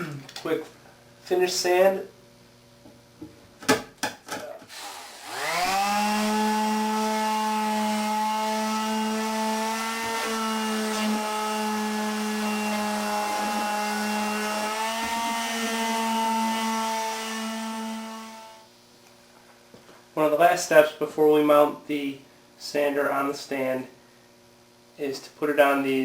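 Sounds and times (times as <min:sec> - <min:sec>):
electric sander running: 0:04.7 - 0:18.6.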